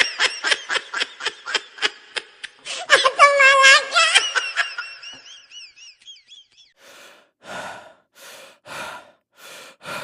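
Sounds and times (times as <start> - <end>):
heavy rhythmic breathing: 6.7 - 10.0.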